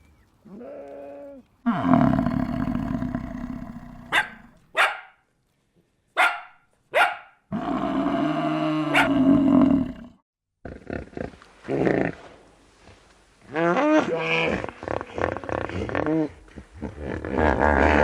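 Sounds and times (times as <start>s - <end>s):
dog barking: 4.1s - 5.2s, 6.2s - 7.4s, 8.9s - 9.2s
dog drawn-out call: 8.9s - 9.2s.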